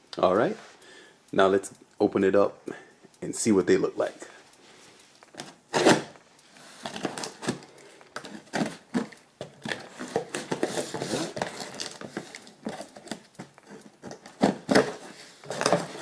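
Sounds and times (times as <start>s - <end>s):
packaging rustling and crinkling: 4.0s - 16.0s.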